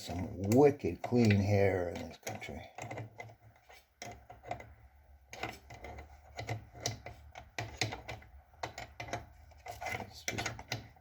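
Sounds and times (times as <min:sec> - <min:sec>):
drill bit clicking and scraping: 0:00.0 - 0:11.0.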